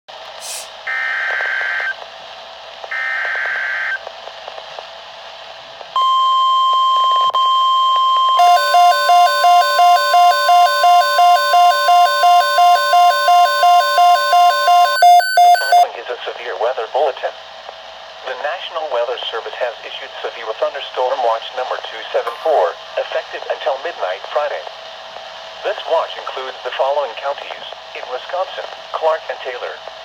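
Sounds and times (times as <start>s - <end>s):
pulsing alarm beep: 6.0s - 15.8s
steady warning tone: 7.6s - 15.8s
warbling digital header tones: 8.4s - 15.8s.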